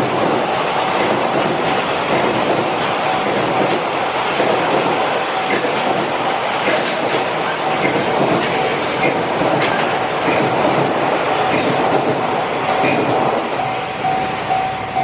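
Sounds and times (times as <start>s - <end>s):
freight train rolling past: 0.0s - 15.0s
wheels squealing on rails: 0.4s - 10.4s.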